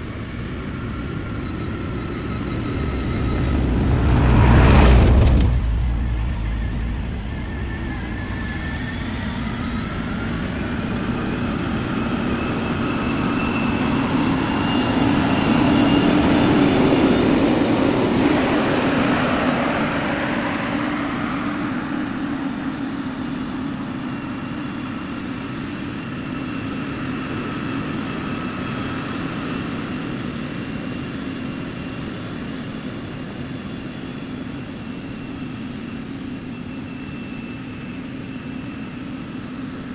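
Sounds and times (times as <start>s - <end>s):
faint engine whine: 0.0s - 39.9s
diesel engine hum: 0.4s - 10.6s.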